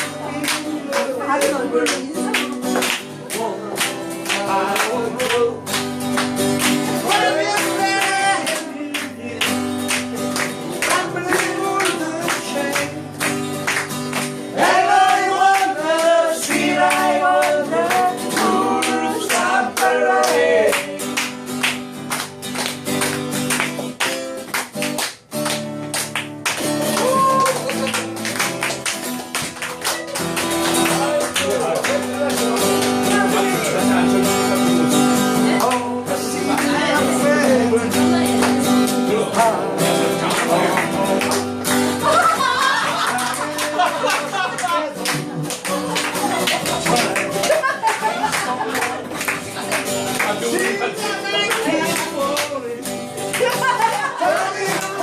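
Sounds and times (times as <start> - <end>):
person singing: 0.0 - 5.7, 7.0 - 9.7, 10.7 - 13.2, 14.6 - 21.2, 35.2 - 41.5, 50.4 - 55.0
acoustic guitar strumming: 0.0 - 55.0.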